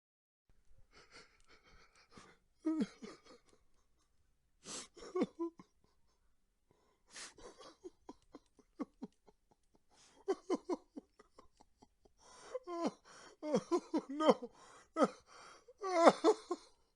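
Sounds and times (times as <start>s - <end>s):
man sobbing: 0.9s - 3.9s, 4.7s - 6.1s, 6.7s - 16.9s
gasping breaths: 12.2s - 13.5s, 14.5s - 15.8s.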